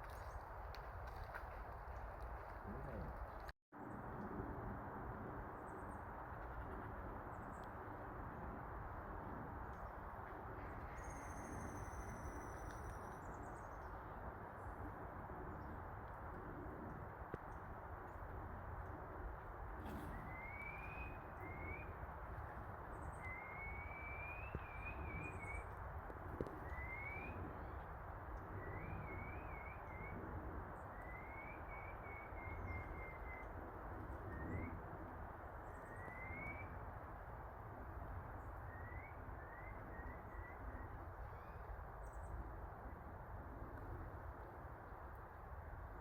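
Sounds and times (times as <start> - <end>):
bird chirping: 10.7 - 14.0.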